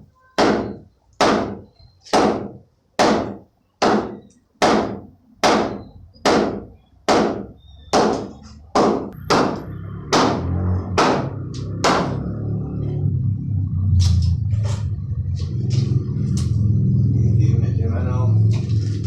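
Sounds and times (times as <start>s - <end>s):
hammer blows on wooden boards: 0.3s - 12.3s.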